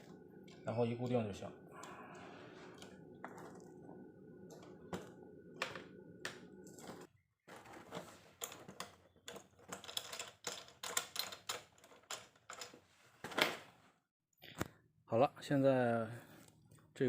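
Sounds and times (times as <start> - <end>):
faint steady hum: 0.0 - 7.1.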